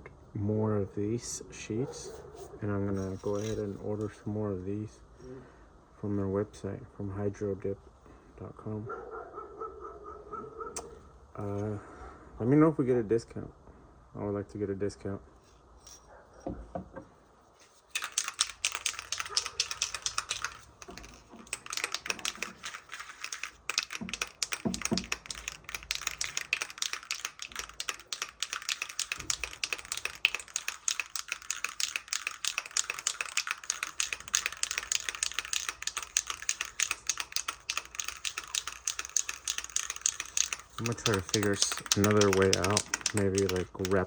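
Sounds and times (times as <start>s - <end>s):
rapid clicking and rattling: 17.9s - 44.0s.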